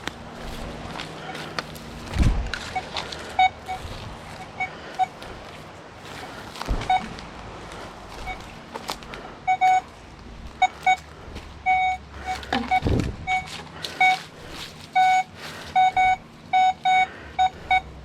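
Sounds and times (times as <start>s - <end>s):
metal detector beeps: 2.7s - 5.2s, 6.8s - 7.1s, 8.2s - 8.5s, 9.5s - 9.9s, 10.6s - 11.0s, 11.6s - 14.2s, 15.0s - 17.9s
low thud: 6.6s - 7.3s, 12.8s - 13.3s.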